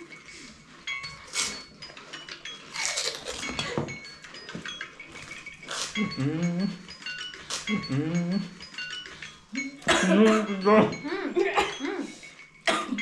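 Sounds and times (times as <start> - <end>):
people crunching food: 2.7 - 3.6, 5.6 - 6.4.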